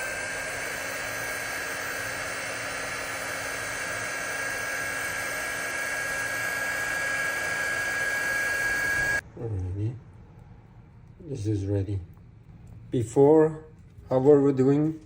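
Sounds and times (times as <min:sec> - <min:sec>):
heat gun fan whining: 0:00.0 - 0:09.2.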